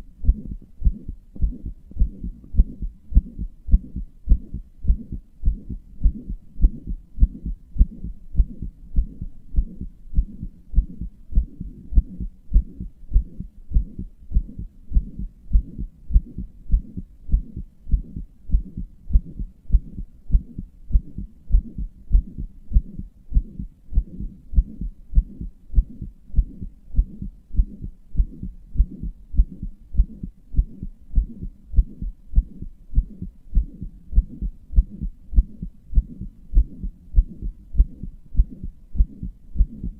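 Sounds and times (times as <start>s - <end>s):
heartbeat thumps: 0.0s - 39.9s
heart murmur whoosh: 0.2s - 39.9s.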